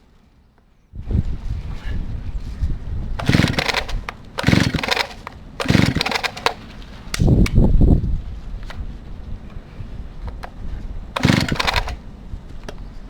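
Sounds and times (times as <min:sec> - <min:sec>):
rattling clatter: 0:03.2 - 0:06.6, 0:11.2 - 0:12.0
chainsaw starter cord whirring: 0:03.2 - 0:07.3, 0:11.2 - 0:12.0.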